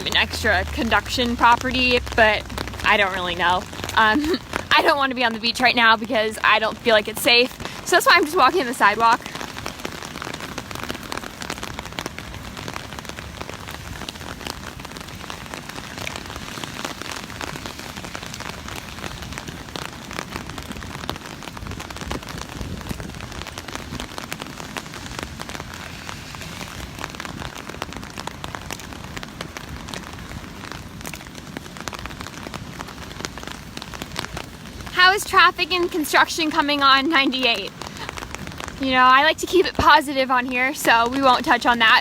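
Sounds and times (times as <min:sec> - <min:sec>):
raindrops ticking nearby: 0:00.0 - 0:42.0
steady rain falling: 0:00.0 - 0:42.0.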